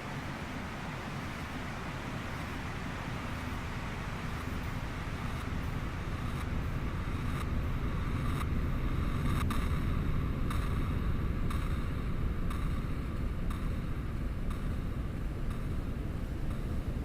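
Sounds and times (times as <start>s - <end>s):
faint soft ticks: 10.4s - 17.0s.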